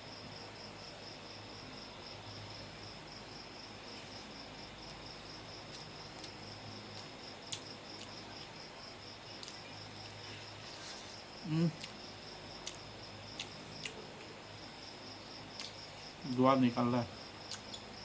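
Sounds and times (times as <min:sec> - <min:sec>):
cricket chirping: 0:00.0 - 0:18.0
low vocal sound: 0:11.4 - 0:11.9.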